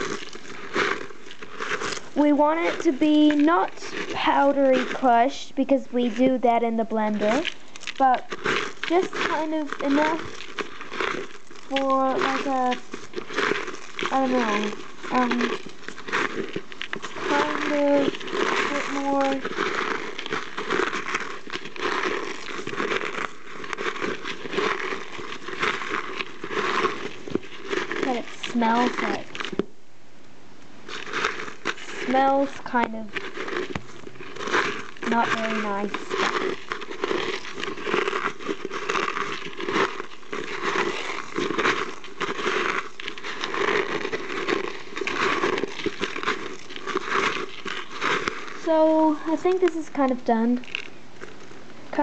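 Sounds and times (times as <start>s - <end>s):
eggshells crackling and crunching: 0.0s - 29.9s, 30.6s - 52.0s.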